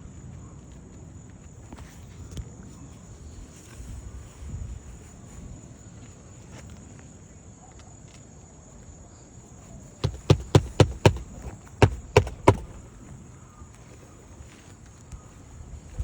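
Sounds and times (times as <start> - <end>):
hammer driving roofing nails: 10.0 - 13.1.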